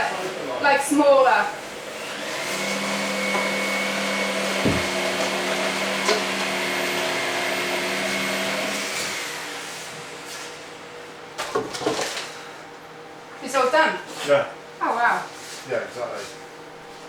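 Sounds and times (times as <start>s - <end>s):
electric motor running and spinning down: 2.0s - 9.6s
short knocks: 4.6s - 5.0s.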